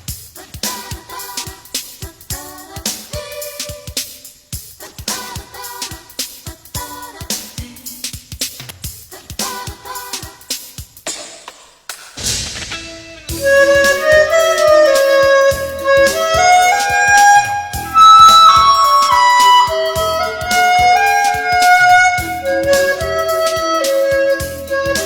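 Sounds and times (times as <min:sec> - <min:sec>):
instrumental pop music: 0:00.0 - 0:25.0
cymbal crash: 0:12.0 - 0:25.0.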